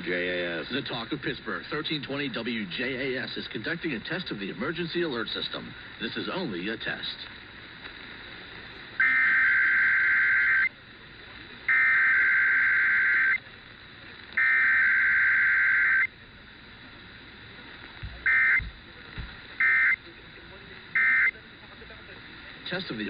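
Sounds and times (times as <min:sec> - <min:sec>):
buzzy two-tone data bursts: 0:09.0 - 0:10.8, 0:11.7 - 0:13.5, 0:14.4 - 0:16.2, 0:18.2 - 0:20.1, 0:20.9 - 0:21.4.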